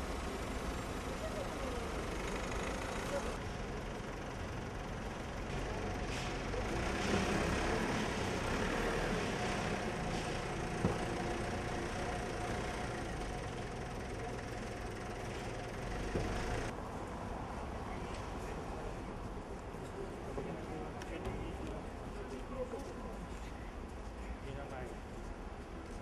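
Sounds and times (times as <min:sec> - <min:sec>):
vehicle engine running: 0:00.0 - 0:16.7
street noise: 0:00.0 - 0:26.0.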